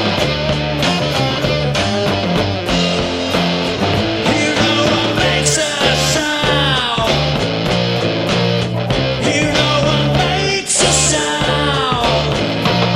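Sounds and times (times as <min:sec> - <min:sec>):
bass guitar: 0:00.0 - 0:12.9
electric guitar: 0:00.0 - 0:12.9
drum kit beat: 0:01.7 - 0:12.9.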